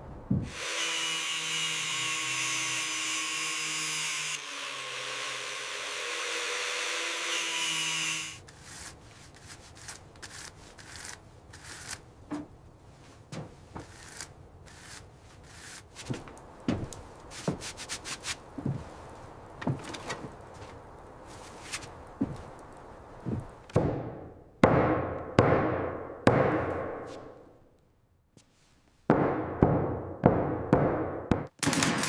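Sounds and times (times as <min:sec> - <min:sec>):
light taps and knocks on wood: 0:13.3 - 0:13.9, 0:16.0 - 0:17.7, 0:18.6 - 0:18.9, 0:19.6 - 0:20.8.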